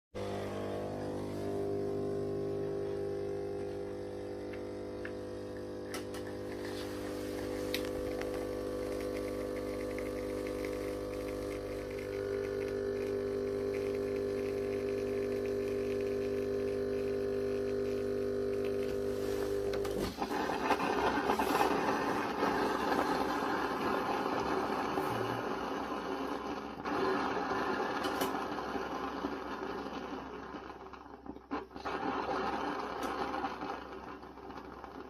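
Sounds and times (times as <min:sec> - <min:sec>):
espresso machine pump buzzing: 0:00.2 - 0:35.0.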